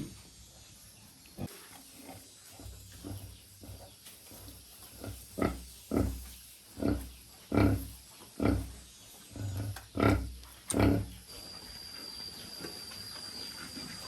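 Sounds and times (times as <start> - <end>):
pig grunting: 4.9 - 11.2.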